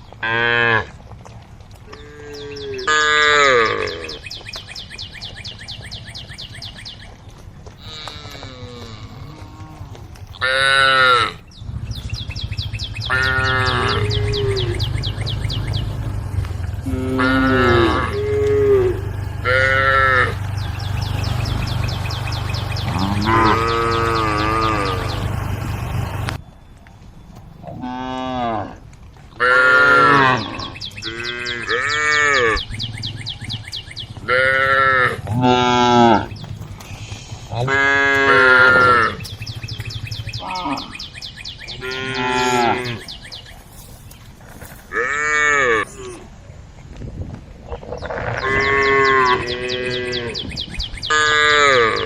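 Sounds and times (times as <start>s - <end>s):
cows mooing: 0.2s - 1.0s, 1.9s - 4.2s, 7.8s - 11.4s, 12.7s - 26.4s, 27.7s - 28.8s, 29.4s - 32.8s, 34.1s - 43.2s, 44.8s - 46.2s, 47.9s - 52.0s
steady low rumble: 11.4s - 27.8s, 36.2s - 41.8s
high chirps: 11.6s - 26.4s.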